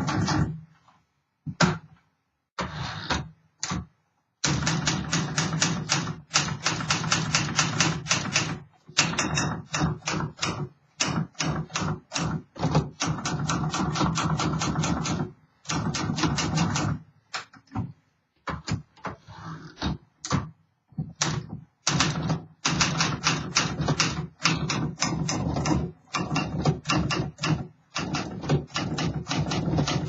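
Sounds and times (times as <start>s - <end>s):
manual typewriter typing: 3.6s - 17.0s, 21.1s - 30.0s.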